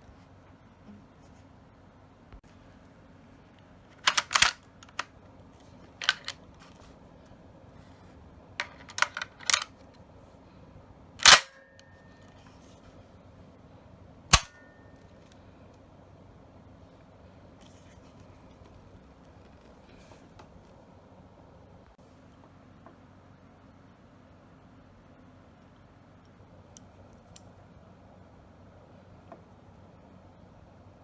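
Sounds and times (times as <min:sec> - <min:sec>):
metallic clicks and clacks: 0:04.0 - 0:05.1, 0:08.6 - 0:09.7, 0:14.4 - 0:14.6.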